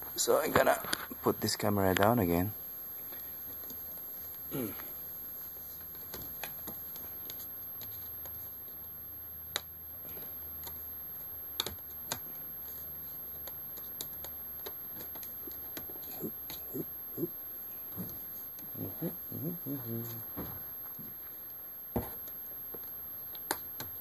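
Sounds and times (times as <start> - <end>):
steady low hum: 0.0 - 24.0
laptop parts clicking and tapping: 9.5 - 10.9, 11.5 - 16.7, 22.1 - 24.0.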